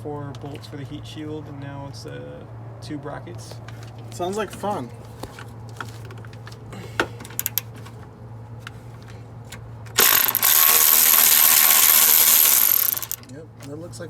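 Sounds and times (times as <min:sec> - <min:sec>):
impact wrench running: 0:07.3 - 0:07.7, 0:10.0 - 0:13.3
metallic clicks of hand tools: 0:07.3 - 0:07.7, 0:11.8 - 0:13.3.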